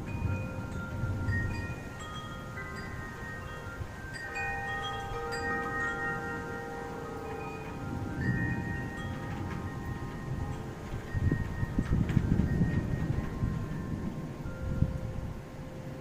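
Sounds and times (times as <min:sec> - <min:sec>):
wind chimes ringing: 0:00.0 - 0:16.0.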